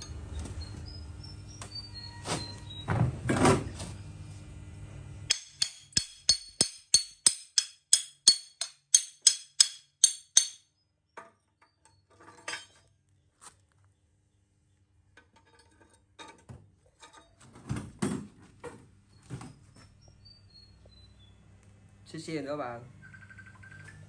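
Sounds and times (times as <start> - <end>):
hammer striking metal: 5.3 - 10.7.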